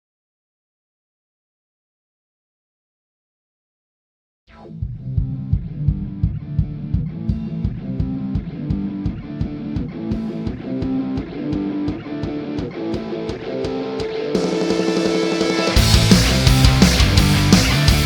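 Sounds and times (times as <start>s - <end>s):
rock music with guitar and drums: 5.0s - 18.0s.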